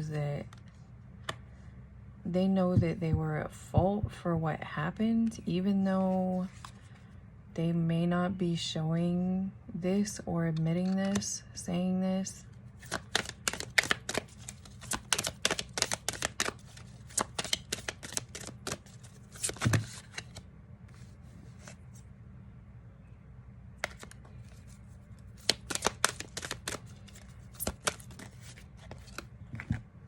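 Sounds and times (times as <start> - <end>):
cards being shuffled: 6.5 - 6.8, 10.8 - 11.2, 12.8 - 22.0, 23.8 - 29.8.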